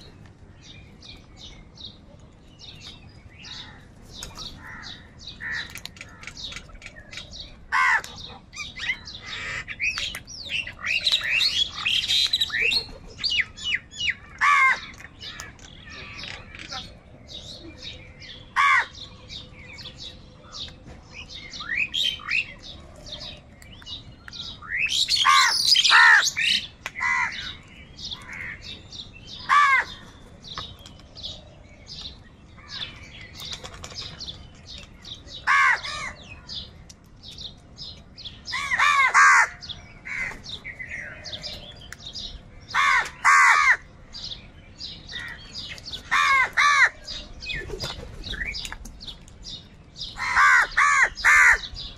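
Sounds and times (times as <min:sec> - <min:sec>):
small birds chirping: 0:00.0 - 0:51.9
crows cawing: 0:03.4 - 0:03.9, 0:04.6 - 0:06.5, 0:07.7 - 0:08.2, 0:08.8 - 0:09.8, 0:14.2 - 0:15.5, 0:18.6 - 0:19.0, 0:25.2 - 0:28.7, 0:29.4 - 0:30.0, 0:35.4 - 0:36.2, 0:38.5 - 0:40.4, 0:42.7 - 0:43.9, 0:46.0 - 0:47.1, 0:50.2 - 0:51.7.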